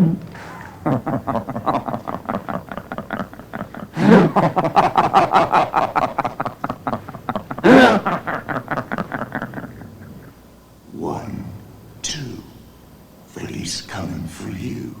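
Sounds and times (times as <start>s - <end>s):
man's deep evil laugh: 0.0s - 10.4s.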